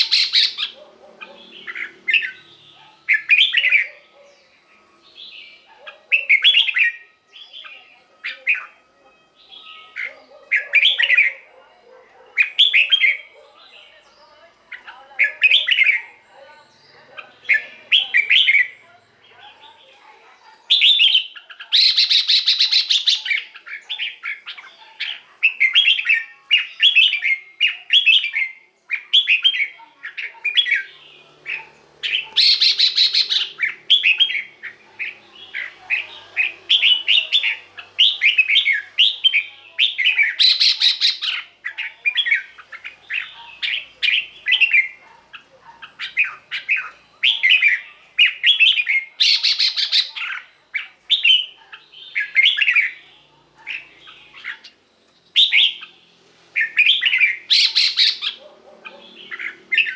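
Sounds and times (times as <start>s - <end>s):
bird warbling song: 0.0s - 8.8s, 12.4s - 59.9s.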